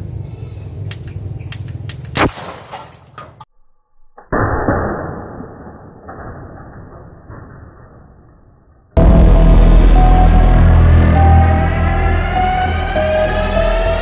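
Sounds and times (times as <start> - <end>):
marble gun firing bang: 4.3 - 7.8.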